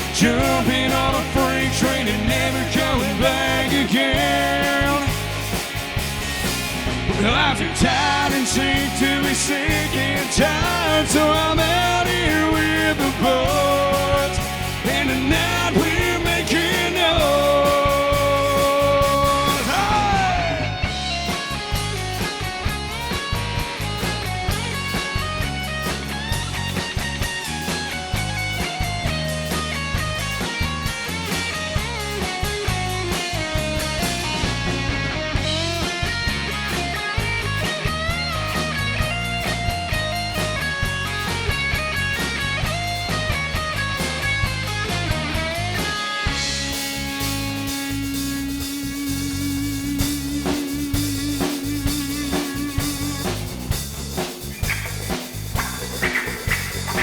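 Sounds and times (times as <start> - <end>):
bass and drums: 0.0 - 57.0
lead guitar melody: 12.8 - 57.0.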